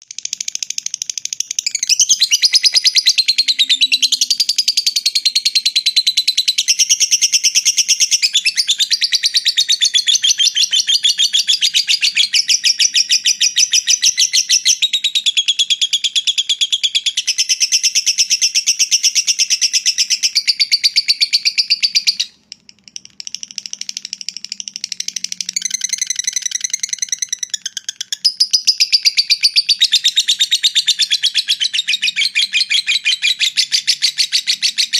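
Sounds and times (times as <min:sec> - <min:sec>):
bird chattering trill: 0:19.0 - 0:34.9.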